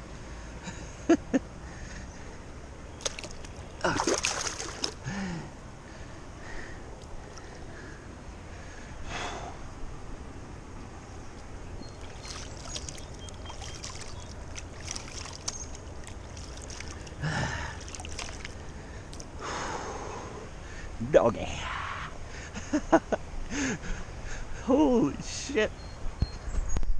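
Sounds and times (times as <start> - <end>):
low steady rumble: 0.0 - 24.6
water sloshing at shoreline: 2.9 - 5.3, 11.1 - 19.4
splashy swishes: 3.0 - 5.0, 12.0 - 17.2, 17.8 - 18.6.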